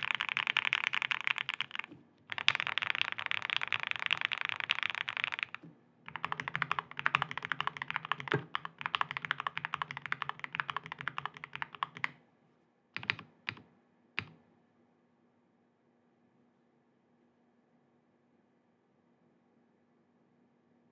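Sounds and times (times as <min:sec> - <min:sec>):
fast typing on mechanical keyboard: 0:00.0 - 0:12.2, 0:13.0 - 0:13.6.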